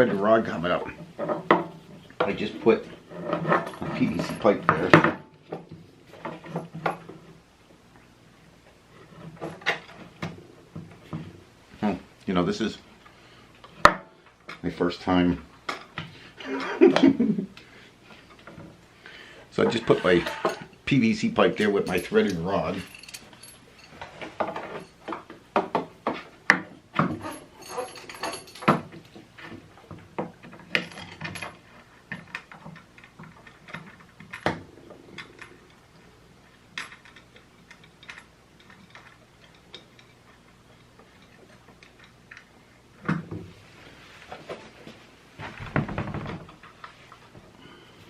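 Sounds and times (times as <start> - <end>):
hard parts clicking and knocking: 21.6 - 43.5.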